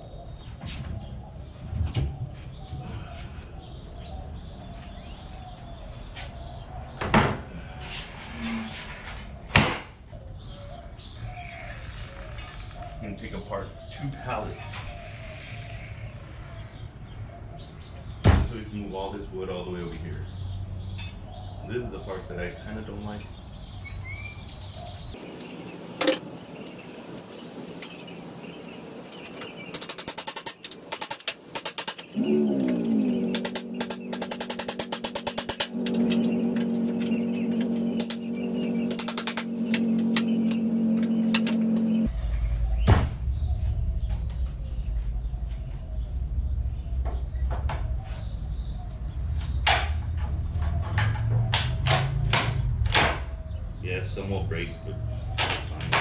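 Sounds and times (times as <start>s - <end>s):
boards knocking and creaking: 25.2s - 42.1s
fast percussion beat: 29.6s - 36.3s, 37.7s - 38.3s, 38.9s - 42.0s.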